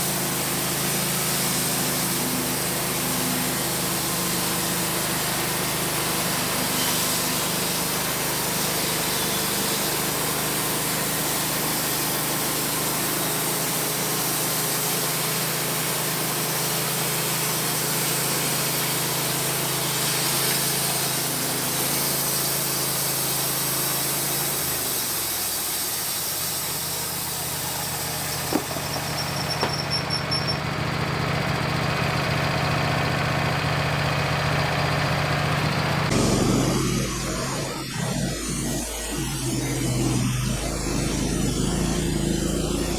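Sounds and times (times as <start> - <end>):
engine running: 0.0 - 42.9
sharp knock: 28.5 - 29.9.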